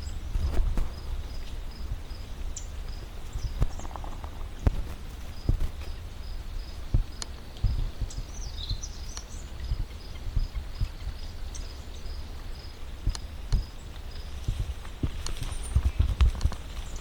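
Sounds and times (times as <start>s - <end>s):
low rumble: 0.0s - 8.4s
bird-like chirp: 0.0s - 14.6s
footsteps on a trail: 13.6s - 17.0s.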